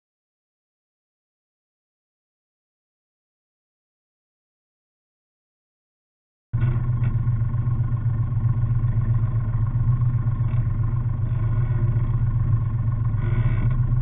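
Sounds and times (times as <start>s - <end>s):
boat engine humming: 6.6s - 14.0s.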